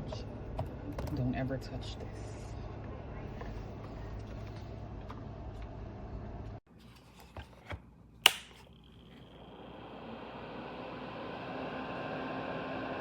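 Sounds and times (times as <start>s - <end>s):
sharp click: 8.2s - 8.6s
heater fan blowing: 9.4s - 13.0s.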